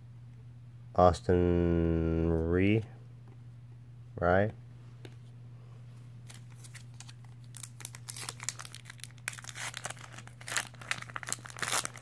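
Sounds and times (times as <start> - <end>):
plastic wrapper crinkling and tearing: 6.3 - 12.0.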